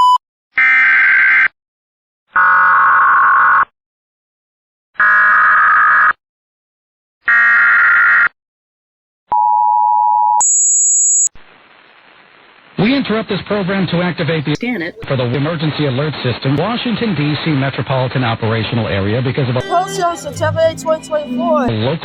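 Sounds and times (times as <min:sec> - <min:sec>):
two-tone attention signal: 0:19.6 - 0:21.7
high-pitched pair of tones: 0:19.6 - 0:21.8.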